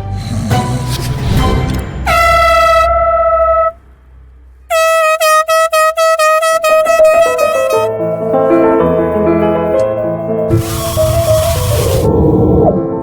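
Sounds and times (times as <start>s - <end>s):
background music: 0.0s - 4.5s, 6.9s - 13.0s
air horn blasts: 2.0s - 3.8s, 4.7s - 7.9s.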